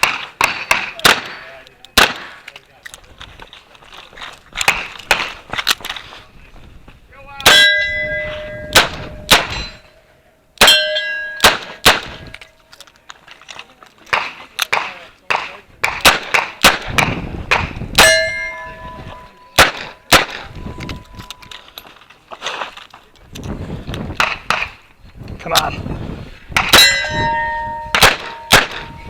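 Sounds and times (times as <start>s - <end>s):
steel targets clanging: 7.4s - 10.0s, 10.6s - 12.8s, 18.0s - 22.1s, 26.6s - 29.0s.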